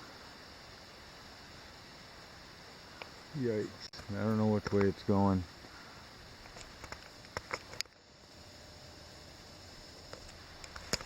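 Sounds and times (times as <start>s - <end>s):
outdoor background hiss: 0.0s - 11.0s
faint ticks: 2.9s - 3.2s.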